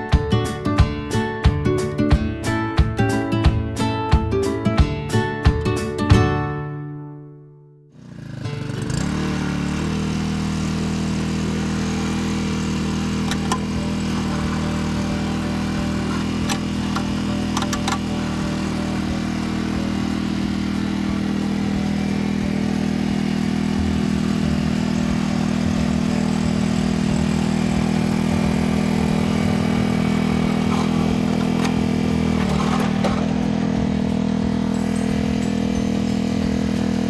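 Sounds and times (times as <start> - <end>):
tiller engine running: 8.0 - 37.0.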